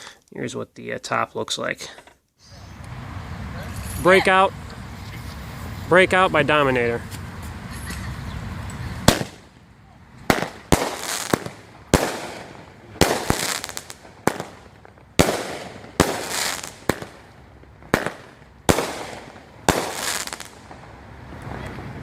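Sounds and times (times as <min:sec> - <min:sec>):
firework bangs with crackling: 0:09.0 - 0:09.6, 0:10.2 - 0:21.6.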